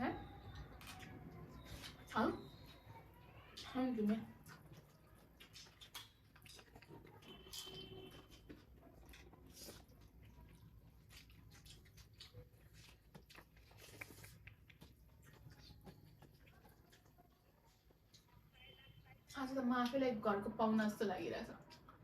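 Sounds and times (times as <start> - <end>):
faint chewing: 0.1 - 22.0
soft mouth smacks and clicks: 4.4 - 7.8, 13.2 - 17.2.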